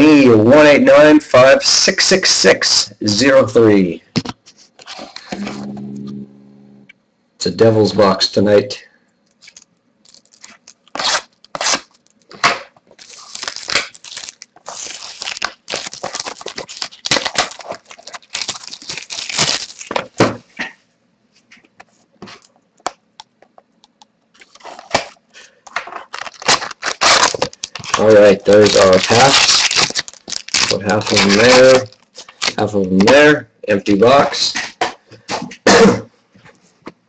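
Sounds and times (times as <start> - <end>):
plastic wrapping tearing and crinkling: 9.3 - 20.2, 24.4 - 32.7.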